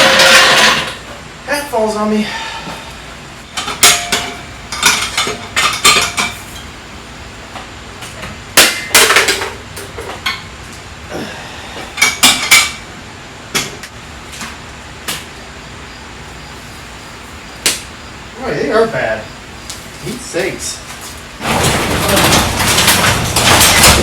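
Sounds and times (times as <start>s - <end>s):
metallic clanks of tools and parts: 0.0s - 1.1s, 3.6s - 6.7s.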